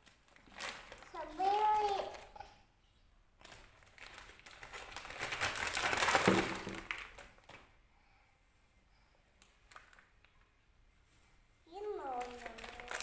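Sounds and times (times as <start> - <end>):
plastic packaging crinkling: 0.0 - 2.3, 3.4 - 7.7, 9.6 - 10.2, 12.0 - 13.0.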